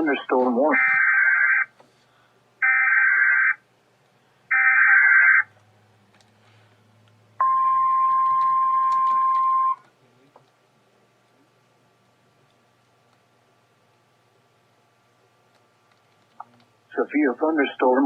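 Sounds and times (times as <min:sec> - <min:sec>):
steady attention tone: 0:07.3 - 0:09.8.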